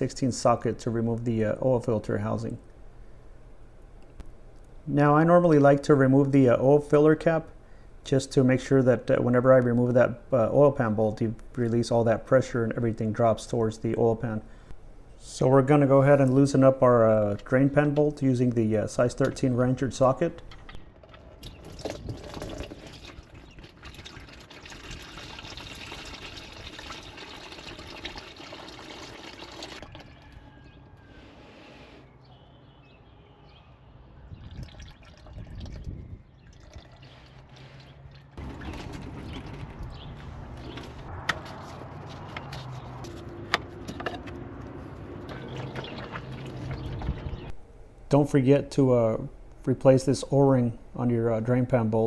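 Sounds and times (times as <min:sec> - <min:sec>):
oil pouring into drain pan: 0:21.6 - 0:30.2.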